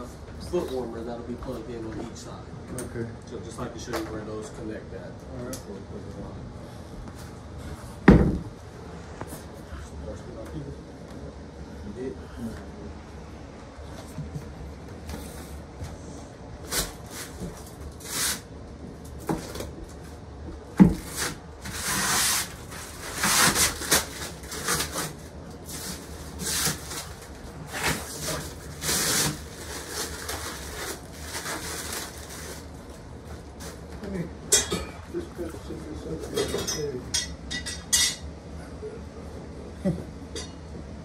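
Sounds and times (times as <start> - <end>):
rustling and scraping: 20.8 - 34.0.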